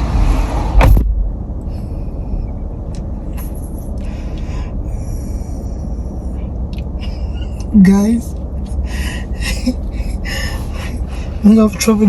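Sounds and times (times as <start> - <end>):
car rumbling: 0.0 - 12.0
sharp thump: 0.7 - 1.3.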